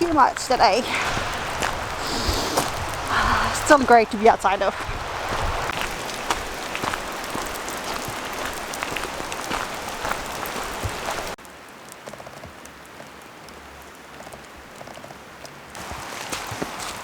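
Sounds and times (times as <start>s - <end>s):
heavy rain falling: 0.0s - 12.0s, 15.7s - 17.0s
raindrops tapping: 0.0s - 17.0s.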